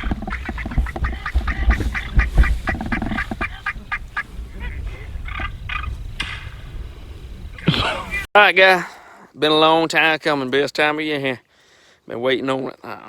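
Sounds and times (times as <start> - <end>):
turkey yelping: 0.0 - 5.9.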